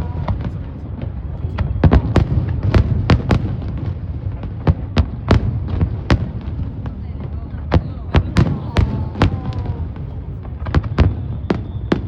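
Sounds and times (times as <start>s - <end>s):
continuous low rumble: 0.0s - 10.8s
fireworks bangs: 0.0s - 12.0s.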